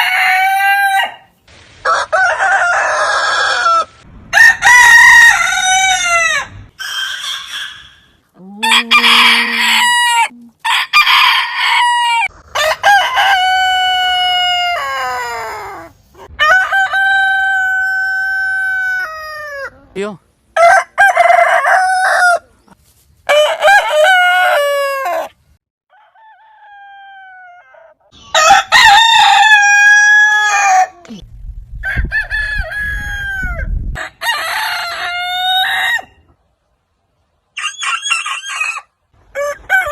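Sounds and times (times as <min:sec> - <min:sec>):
roosters crowing: 0:00.0 - 0:19.8, 0:20.6 - 0:31.0, 0:31.8 - 0:36.3, 0:37.5 - 0:39.9
low rumble: 0:04.0 - 0:04.6, 0:31.2 - 0:34.0.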